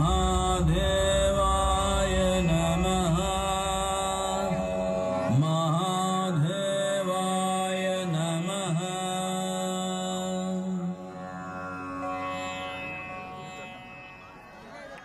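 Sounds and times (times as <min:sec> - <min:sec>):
low rumble: 0:00.0 - 0:06.8
steady drone: 0:00.0 - 0:14.8
person chanting long notes: 0:00.0 - 0:15.0.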